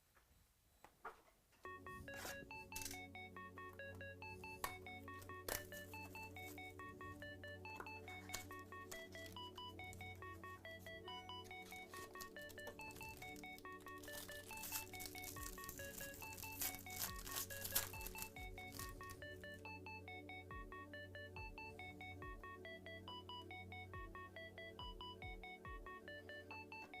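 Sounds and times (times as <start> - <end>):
faint clicks and crinkles: 0.0 - 19.7
plinking melody: 1.6 - 27.0.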